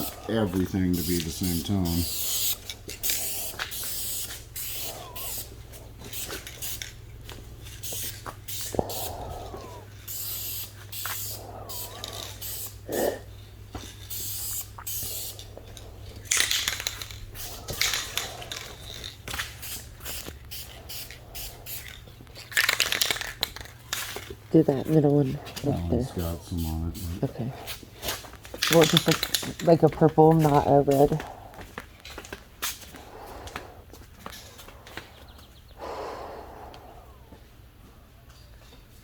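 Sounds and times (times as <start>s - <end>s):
spray can hissing: 0.0s - 5.5s, 6.1s - 7.0s, 7.6s - 13.2s, 14.0s - 15.5s, 16.3s - 22.0s.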